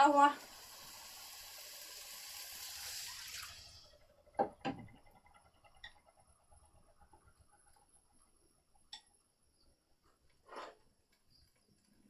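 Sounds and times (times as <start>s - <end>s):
water running: 0.0s - 4.0s.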